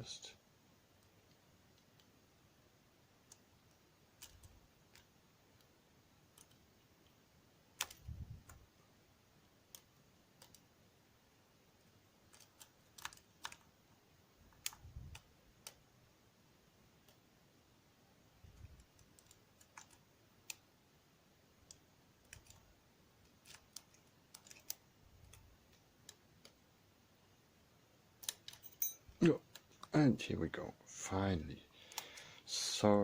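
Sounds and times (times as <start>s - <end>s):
lock picks clicking: 28.2s - 29.9s.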